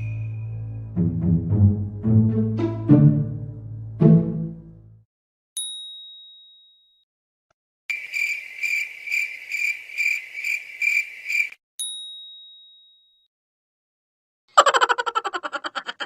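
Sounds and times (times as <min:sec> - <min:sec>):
high ding: 0:00.0 - 0:00.6
crickets chirping: 0:07.9 - 0:11.6.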